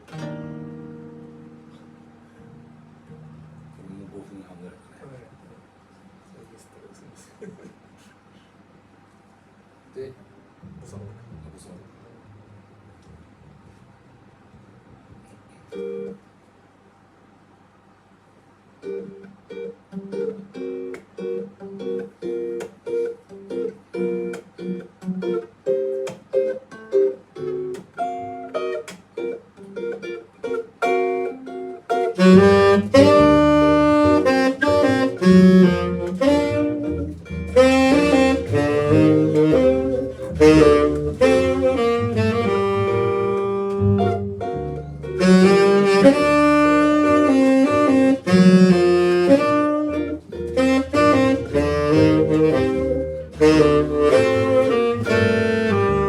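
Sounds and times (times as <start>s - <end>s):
guitar choppy rhythmic chords: 0.0s - 4.0s, 15.7s - 16.3s, 18.8s - 56.0s
band playing with saxophone lead: 31.9s - 56.0s.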